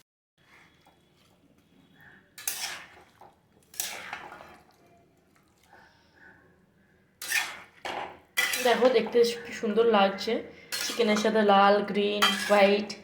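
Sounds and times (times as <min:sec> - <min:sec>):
spoon clattering against pan: 0:07.2 - 0:09.2.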